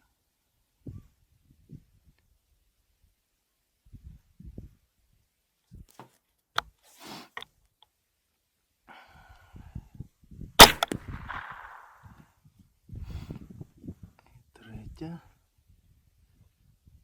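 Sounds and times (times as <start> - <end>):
rifle shot with echo: 10.6 - 12.1.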